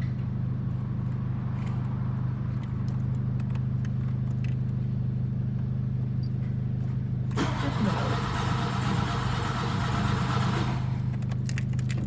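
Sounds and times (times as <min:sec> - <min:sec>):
starter motor cranking engine: 0:07.3 - 0:11.1.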